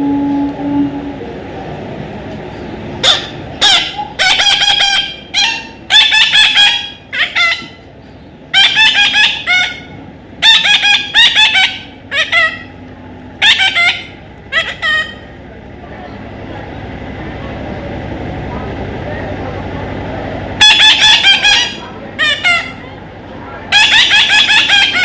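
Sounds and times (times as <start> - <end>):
parrot calling harshly: 3.0 - 7.8, 8.5 - 12.8, 13.4 - 15.3, 20.6 - 22.9, 23.7 - 25.0.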